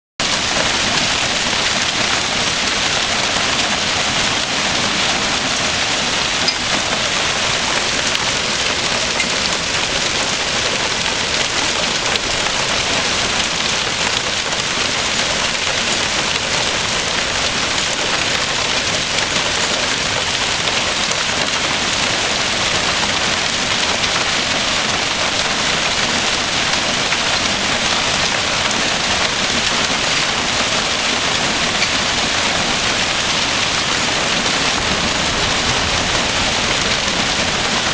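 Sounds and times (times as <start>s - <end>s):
hail hitting the ground: 0.2s - 37.9s.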